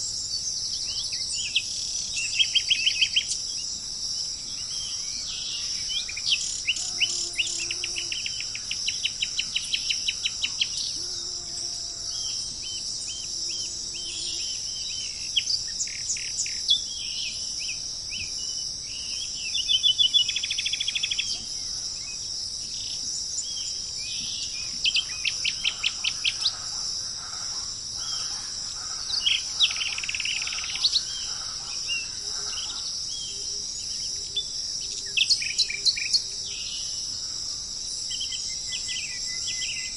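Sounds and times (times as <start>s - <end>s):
insects droning: 0.0s - 39.9s
birds chirping: 19.2s - 34.0s.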